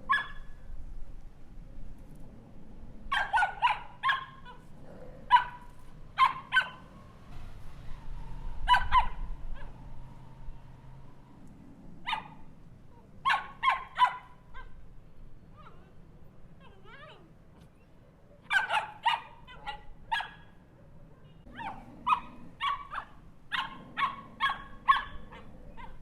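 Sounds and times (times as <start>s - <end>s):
small dog barking: 0.0s - 0.6s, 3.1s - 6.9s, 8.6s - 9.8s, 12.0s - 14.8s, 18.4s - 26.0s.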